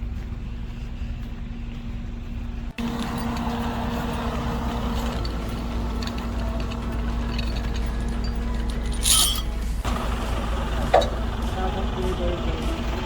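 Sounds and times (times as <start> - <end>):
diesel engine humming: 0.0 - 13.0
metallic clinks and rattles: 2.7 - 9.9.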